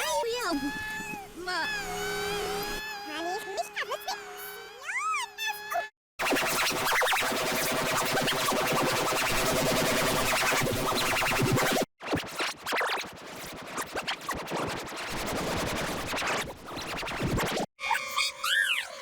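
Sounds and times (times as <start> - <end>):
distorted scratch-like electronic music: 6.2 - 17.6.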